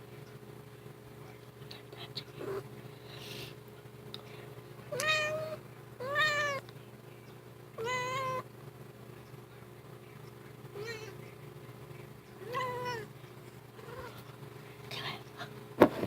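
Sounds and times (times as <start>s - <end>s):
cat meowing: 4.9s - 6.6s, 7.8s - 8.4s, 12.4s - 13.1s.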